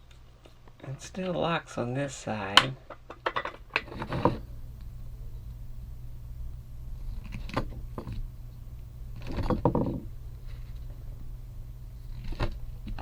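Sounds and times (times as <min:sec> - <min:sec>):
steady low hum: 0:00.0 - 0:13.0
plastic clatter: 0:02.9 - 0:04.4, 0:09.2 - 0:11.0.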